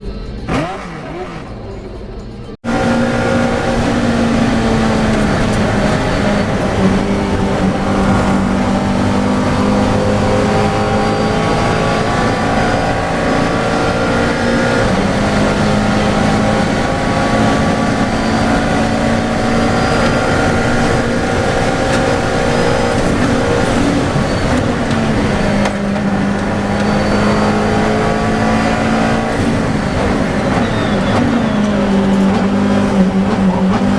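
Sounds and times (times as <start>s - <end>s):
race car engine at high revs: 0.0s - 33.9s.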